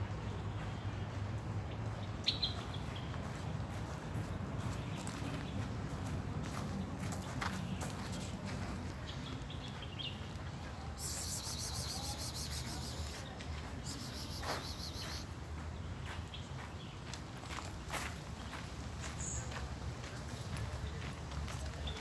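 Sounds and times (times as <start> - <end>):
bird chirps: 11.0 - 13.2, 13.8 - 15.2.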